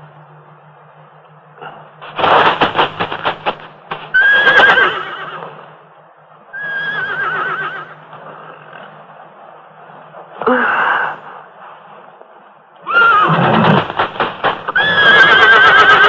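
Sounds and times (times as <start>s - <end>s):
horse whinnying: 4.1s - 5.6s, 6.6s - 8.0s, 12.8s - 16.0s.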